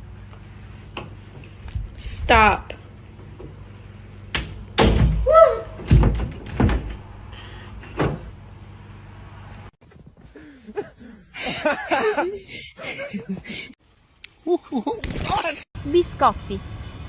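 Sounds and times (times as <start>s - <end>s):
short cry: 5.2s - 5.8s.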